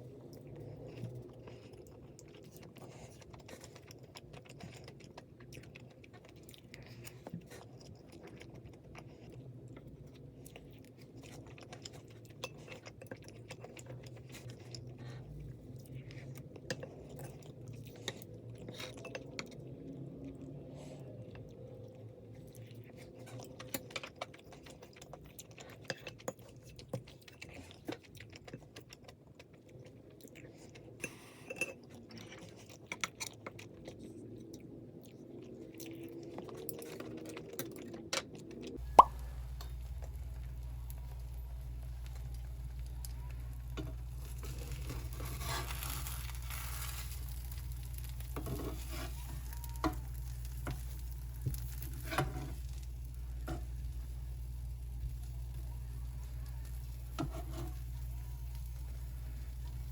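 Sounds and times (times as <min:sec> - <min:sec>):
low hum: 0:38.8 - 0:59.9.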